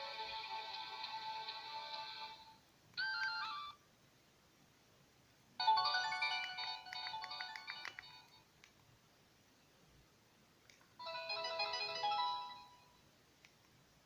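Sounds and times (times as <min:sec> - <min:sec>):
phone ringtone melody: 0:03.0 - 0:03.8, 0:05.6 - 0:08.3, 0:11.0 - 0:12.9.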